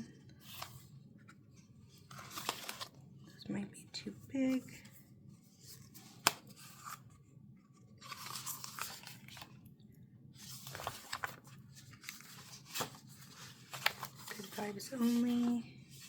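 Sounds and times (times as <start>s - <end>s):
paper sheets crinkling: 0.3s - 1.3s, 1.9s - 3.0s, 5.6s - 7.1s, 7.7s - 9.6s, 10.4s - 16.0s.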